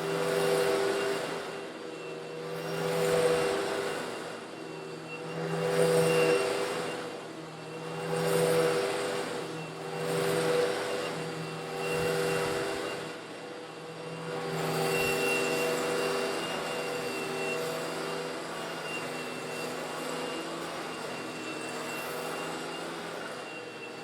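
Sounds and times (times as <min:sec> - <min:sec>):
vacuum cleaner motor hum: 0:00.0 - 0:24.0.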